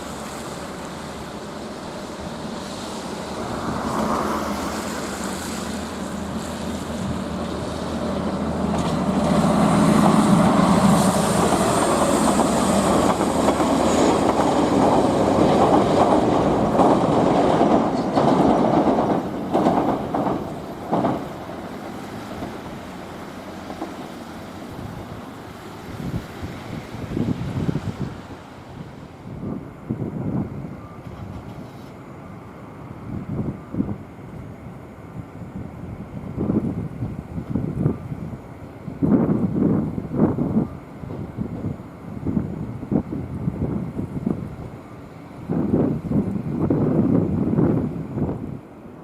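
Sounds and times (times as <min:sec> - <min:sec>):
train passing on rails: 0:00.0 - 0:49.0
train wheels clacking: 0:07.4 - 0:22.8.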